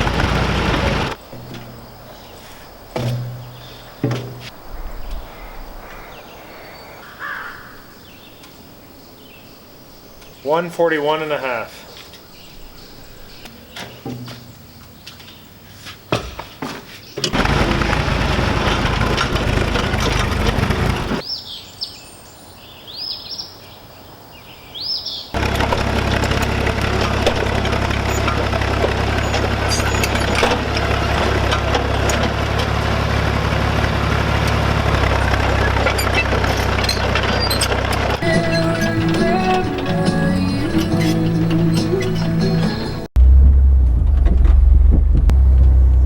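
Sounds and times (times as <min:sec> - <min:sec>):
loud engine running: 0:00.0 - 0:01.2, 0:17.3 - 0:21.2, 0:25.4 - 0:43.1
birds chirping: 0:00.0 - 0:15.6, 0:17.0 - 0:23.5.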